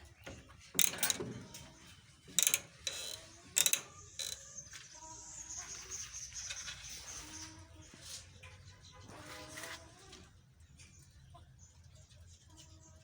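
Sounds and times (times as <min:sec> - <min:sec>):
mechanical clicks and rattles: 0:00.8 - 0:01.5, 0:02.3 - 0:04.4.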